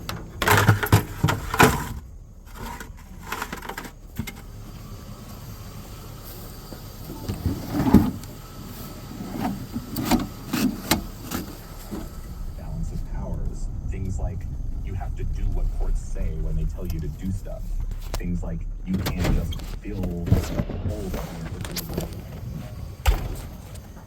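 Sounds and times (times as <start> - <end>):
knocks and clatters: 0.0 - 4.5, 9.8 - 24.0
low steady rumble: 0.0 - 24.0.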